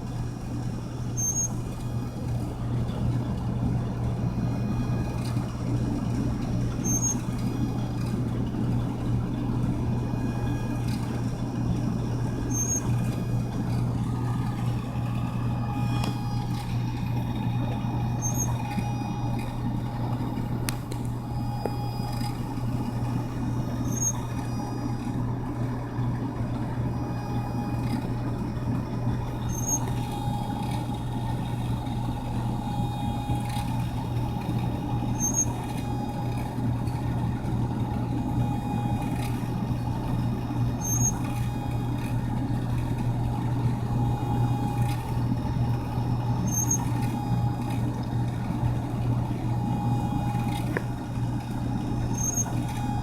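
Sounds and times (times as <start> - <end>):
brief high-pitched squeak: 1.2 - 1.6, 6.8 - 7.2, 12.5 - 13.0, 18.2 - 18.7, 23.8 - 24.2, 29.5 - 29.9, 35.2 - 35.5, 40.8 - 41.2, 46.4 - 46.9, 52.2 - 52.8.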